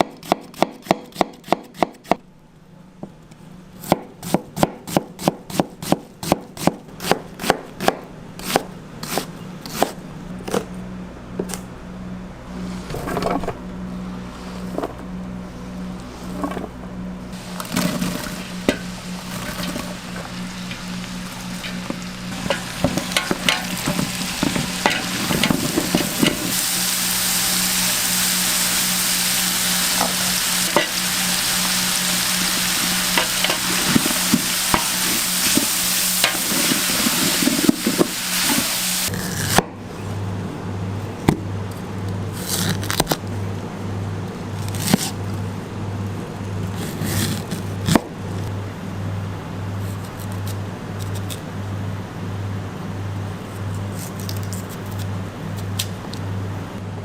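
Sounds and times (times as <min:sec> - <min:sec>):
steady low hum: 0:02.0 - 0:57.0
food sizzling in a pan: 0:17.4 - 0:39.1
cooking utensil clicks and scrapes: 0:17.6 - 0:26.6, 0:33.1 - 0:38.7.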